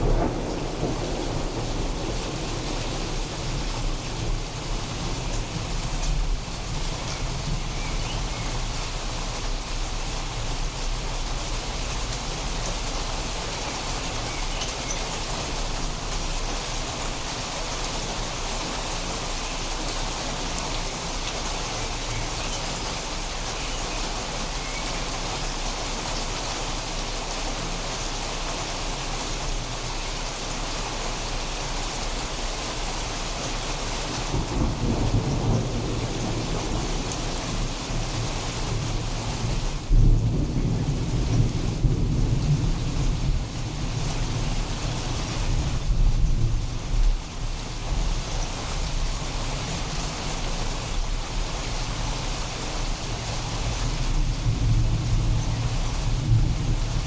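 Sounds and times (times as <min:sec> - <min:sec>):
low rumble of thunder: 0:00.0 - 0:18.2, 0:34.0 - 0:57.0
steady rain falling: 0:00.0 - 0:57.0.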